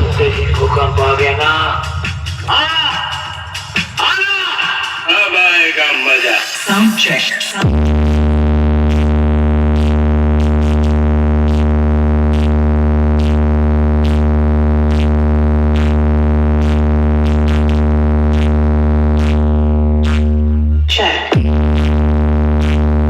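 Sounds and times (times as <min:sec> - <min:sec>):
deep buzzing bass tone: 0:07.6 - 0:23.0.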